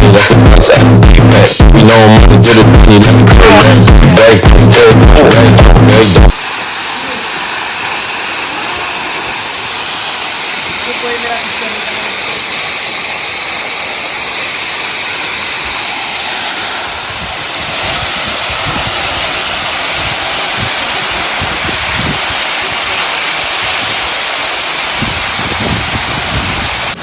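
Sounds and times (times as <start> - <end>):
low rumbles: 0.0 - 6.3
waterfall rushing water: 6.3 - 27.0.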